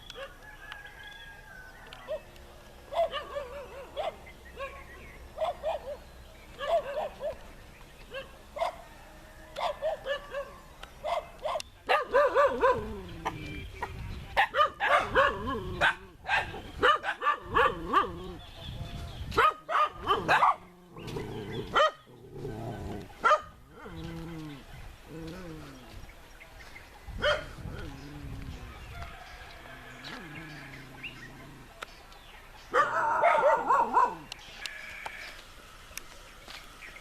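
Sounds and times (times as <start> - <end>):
dog barking and yelping: 2.9 - 6.0, 6.6 - 7.4, 8.1 - 8.9, 9.6 - 13.4, 14.4 - 18.4, 19.3 - 25.6, 27.2 - 27.8, 32.7 - 34.4.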